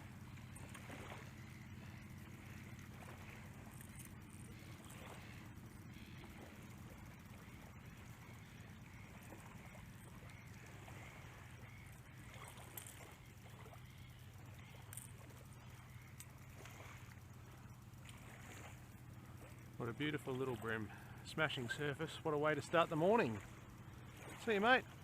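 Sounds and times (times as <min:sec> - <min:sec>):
gentle water movement: 0:00.0 - 0:25.0
steady low hum: 0:00.0 - 0:25.0
soft ticks: 0:00.2 - 0:10.7, 0:11.5 - 0:18.2.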